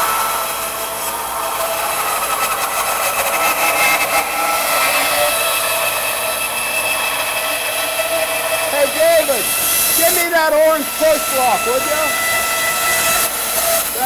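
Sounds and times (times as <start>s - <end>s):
bandsaw cutting wood with whine: 0.0s - 14.0s.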